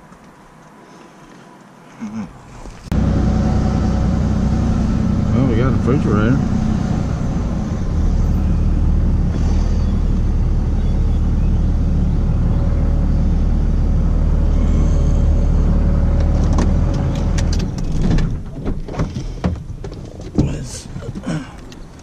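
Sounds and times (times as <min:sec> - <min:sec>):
truck engine and road rumble: 0:00.0 - 0:22.0
sharp clicks and knocks: 0:16.2 - 0:22.0.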